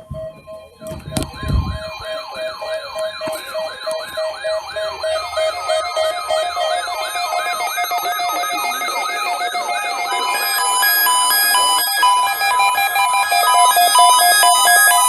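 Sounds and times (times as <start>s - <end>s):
steady alarm tone: 0.0s - 15.0s
steady beeps: 0.0s - 15.0s
warbling siren-like alarm tone: 0.0s - 15.0s.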